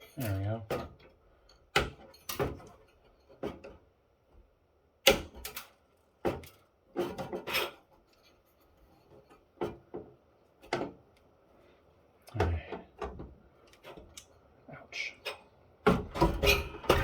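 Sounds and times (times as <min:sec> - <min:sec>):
metal parts knocking and clunking: 0:15.9 - 0:17.0.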